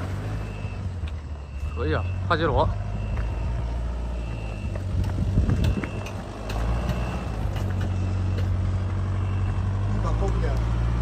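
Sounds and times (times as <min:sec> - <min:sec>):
engine running: 0:02.6 - 0:11.0.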